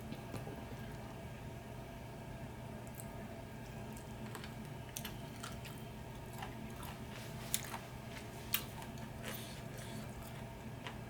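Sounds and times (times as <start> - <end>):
chewing chicken wings: 2.9 - 11.0.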